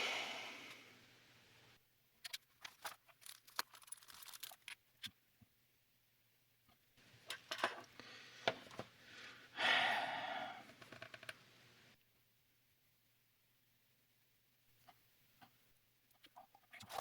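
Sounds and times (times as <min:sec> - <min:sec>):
plastic parts clicking and knocking: 0:06.7 - 0:08.9.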